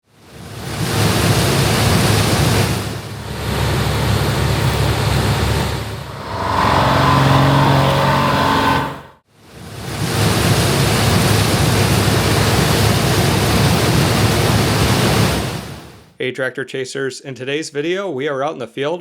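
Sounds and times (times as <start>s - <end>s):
diesel engine running: 2.8s - 9.2s
high-pitched whine: 6.0s - 9.2s
threshing machinery rushing: 6.1s - 9.2s.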